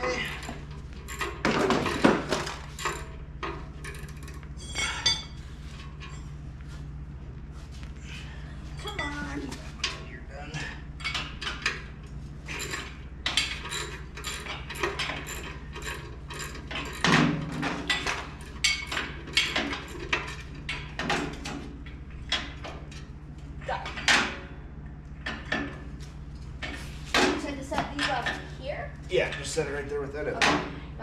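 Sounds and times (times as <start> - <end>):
metal tools and bolts clinking: 0.0 - 6.4, 8.6 - 10.1, 11.0 - 23.1
steady low hum: 0.0 - 31.0.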